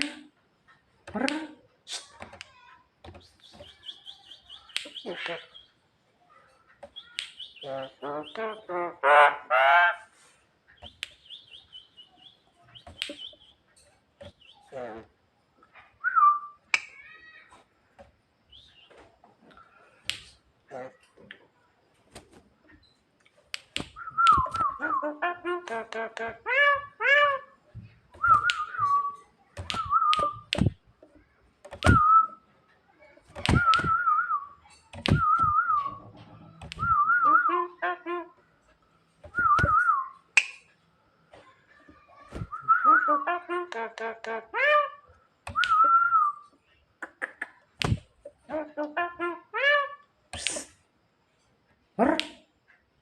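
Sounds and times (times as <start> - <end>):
bird high thin chirps: 3.1 - 5.8, 6.8 - 8.6, 10.7 - 14.7
bird harsh honking calls: 7.0 - 13.6
myna warbling whistles: 28.2 - 30.5, 31.8 - 32.4, 33.4 - 37.8, 39.3 - 40.5, 45.6 - 46.5
person whistling: 31.8 - 32.4, 33.5 - 34.4, 35.1 - 36.0, 36.7 - 37.5, 39.3 - 40.1.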